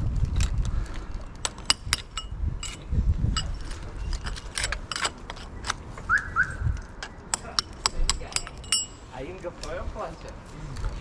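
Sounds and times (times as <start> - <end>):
small metal items clinking: 1.4 - 5.8, 6.9 - 9.1.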